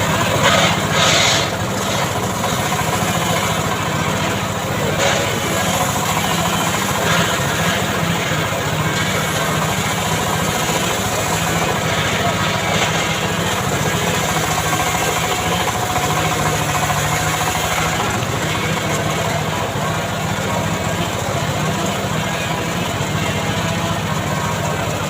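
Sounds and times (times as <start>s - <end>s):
log saw engine running: 0.0s - 25.0s.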